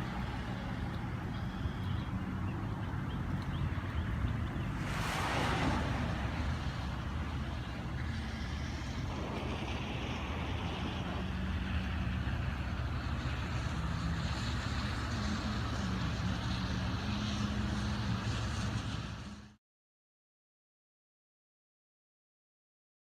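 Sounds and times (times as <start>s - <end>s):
road tyre noise: 0.0s - 19.6s
vehicle engine running: 0.0s - 19.6s
brief rushing sound: 4.6s - 8.0s.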